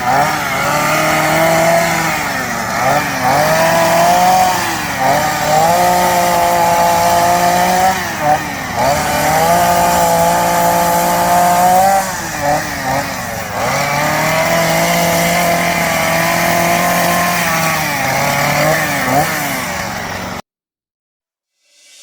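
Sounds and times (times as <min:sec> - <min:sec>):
chainsaw running at high revs: 0:00.0 - 0:20.4.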